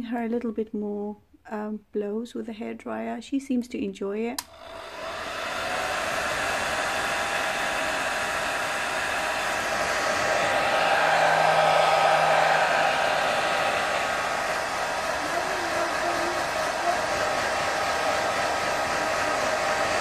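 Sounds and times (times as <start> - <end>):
hair dryer blowing: 4.4 - 20.0
low hum: 5.5 - 17.1.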